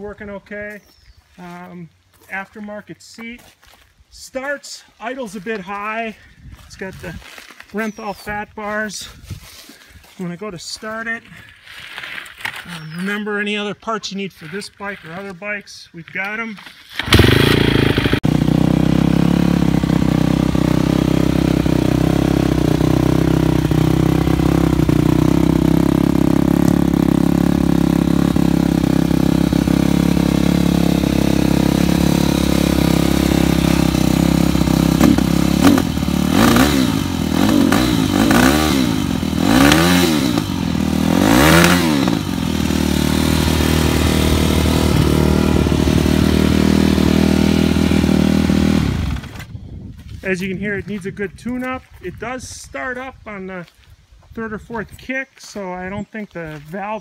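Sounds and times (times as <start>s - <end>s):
motorcycle engine idling and revving: 16.9s - 50.1s.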